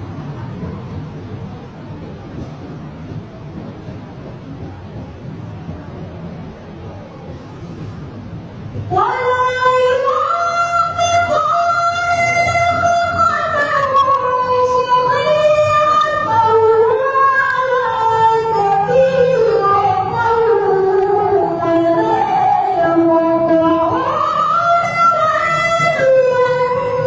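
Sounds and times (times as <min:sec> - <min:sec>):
woman singing: 0:08.9 - 0:27.0.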